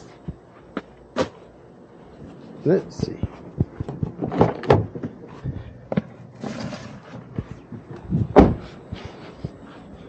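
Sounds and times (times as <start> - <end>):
loud thump: 8.2 - 8.7.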